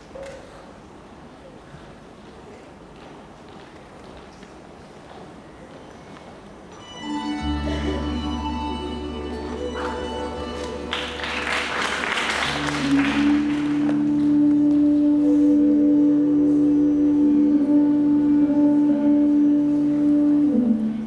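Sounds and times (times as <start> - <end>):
instrumental music with held notes: 6.8 - 21.0.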